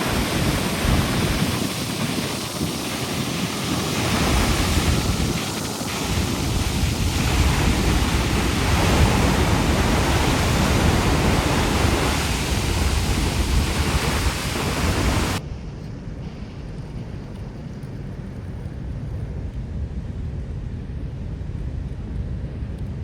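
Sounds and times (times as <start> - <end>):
water roaring through spillway: 0.0 - 15.4.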